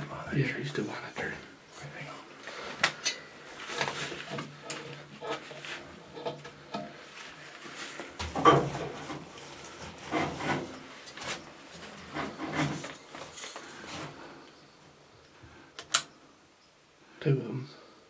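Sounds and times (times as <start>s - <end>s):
rubbing and scraping on wood: 3.5s - 14.4s.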